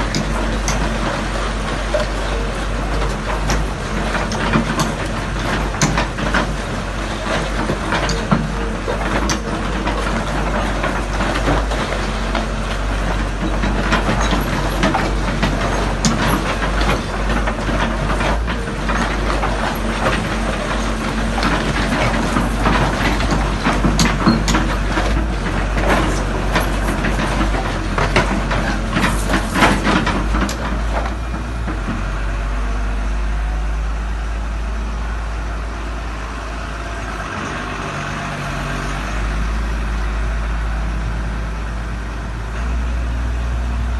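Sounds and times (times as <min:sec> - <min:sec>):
metallic clanks and knocks: 0:00.0 - 0:32.0
excavator diesel engine humming: 0:00.0 - 0:43.9.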